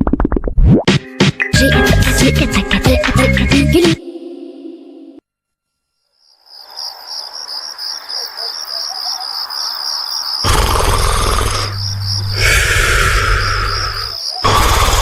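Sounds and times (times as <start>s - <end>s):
crickets chirping: 5.9s - 15.0s
cartoon snoring: 10.4s - 15.0s.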